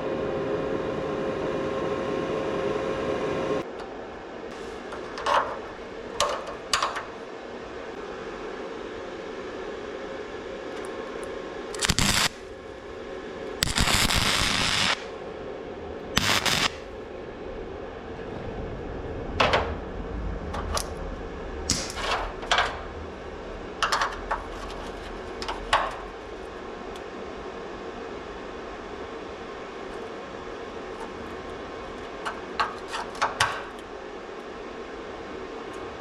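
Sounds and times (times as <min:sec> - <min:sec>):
steady low hum: 0:00.0 - 0:36.0
welding crackle: 0:11.8 - 0:12.6, 0:13.6 - 0:15.2, 0:16.2 - 0:16.9, 0:21.7 - 0:22.6.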